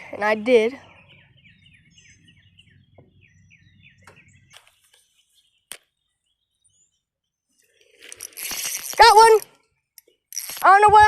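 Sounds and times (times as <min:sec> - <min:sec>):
faint bird chirping: 0:00.0 - 0:08.1.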